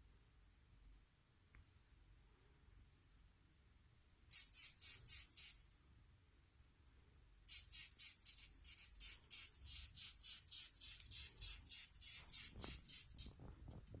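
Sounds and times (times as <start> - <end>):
moth hissing chirps: 4.3 - 5.7, 7.5 - 13.3.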